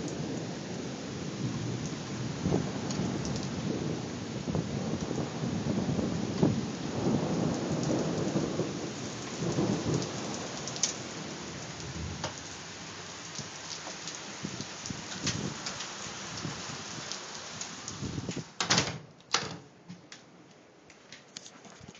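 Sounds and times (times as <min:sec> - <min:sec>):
thunder rumbling: 0:00.0 - 0:17.2
steady rain: 0:00.0 - 0:18.9.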